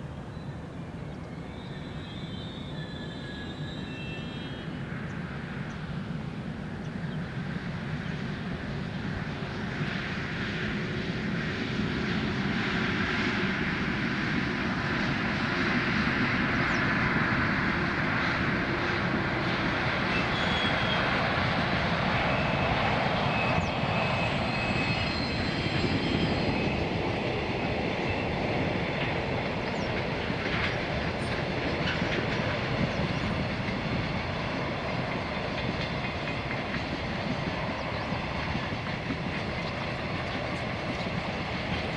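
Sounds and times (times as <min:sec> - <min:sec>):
train wheels rumbling on rail: 0:01.0 - 0:41.9
high wheel squeals: 0:01.4 - 0:04.9, 0:19.4 - 0:27.4
clickety-clack over rail joints: 0:16.7 - 0:41.9.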